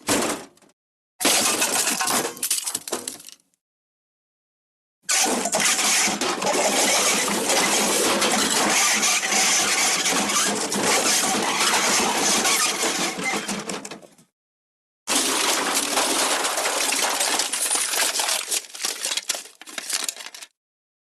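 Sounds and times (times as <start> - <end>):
cartoon crash of tumbling debris: 1.2 - 3.2, 15.1 - 20.3.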